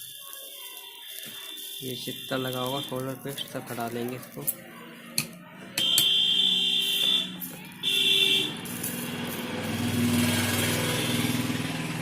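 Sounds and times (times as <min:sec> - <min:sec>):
vehicle engine humming: 0:08.3 - 0:12.0.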